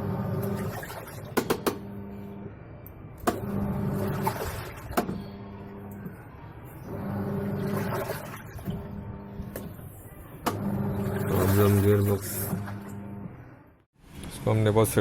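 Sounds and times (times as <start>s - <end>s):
washing machine motor humming: 0.0s - 13.8s
washing machine sharp clicks: 0.8s - 1.9s, 3.2s - 5.3s, 10.4s - 11.3s.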